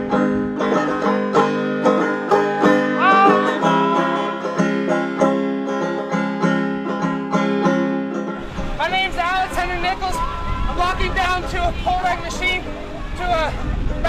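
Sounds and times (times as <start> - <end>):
banjo picking: 0.0 - 9.6.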